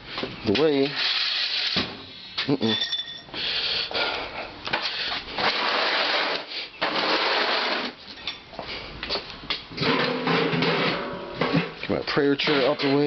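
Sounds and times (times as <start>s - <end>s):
items scraping across floor: 5.4s - 8.2s, 9.8s - 11.8s.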